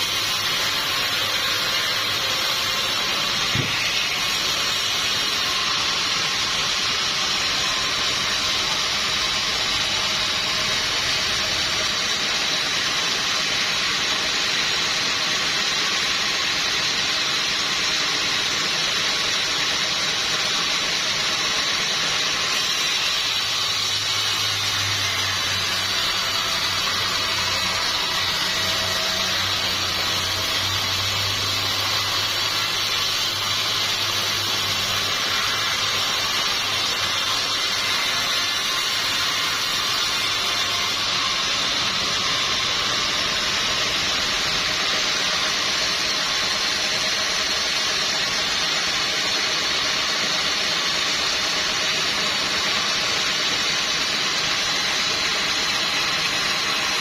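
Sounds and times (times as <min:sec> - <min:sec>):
sawmill machinery rushing noise: 0:00.0 - 0:57.0.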